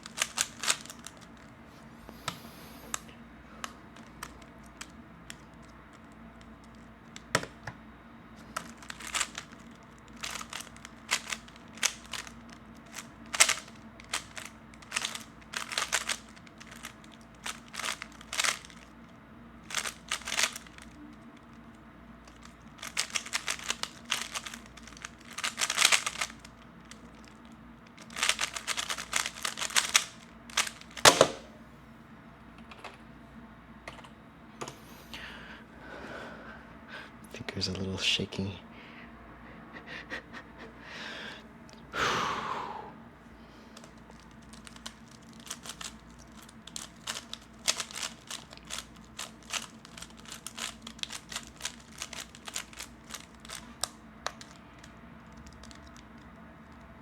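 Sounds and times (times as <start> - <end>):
speed cube clacking: 0.0 - 1.5, 2.3 - 7.6, 8.6 - 19.0, 19.6 - 21.5, 22.2 - 31.5, 43.8 - 56.8.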